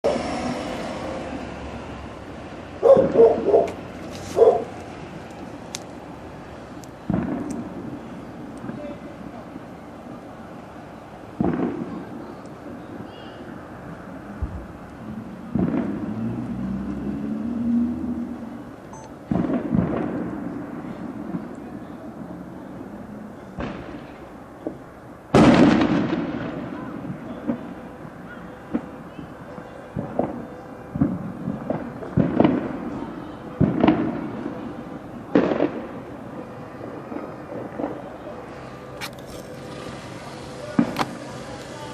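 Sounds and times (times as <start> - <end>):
firework bang: 7.0 - 9.4, 11.4 - 12.4, 15.5 - 16.3, 19.2 - 21.9, 23.6 - 27.8, 30.0 - 38.2, 38.9 - 41.9.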